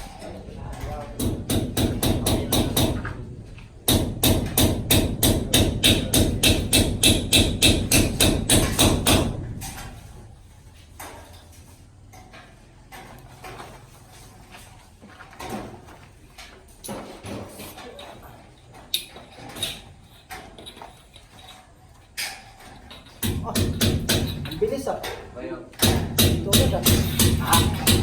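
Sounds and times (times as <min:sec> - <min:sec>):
rapid hammering: 0:00.9 - 0:10.0, 0:22.3 - 0:25.2, 0:25.8 - 0:28.0.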